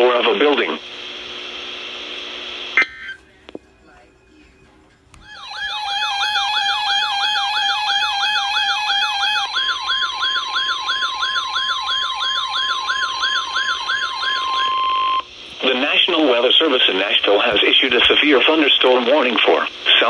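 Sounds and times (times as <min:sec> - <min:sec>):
steady alarm tone: 0:02.8 - 0:16.8
siren-like falling sweep: 0:05.2 - 0:15.2.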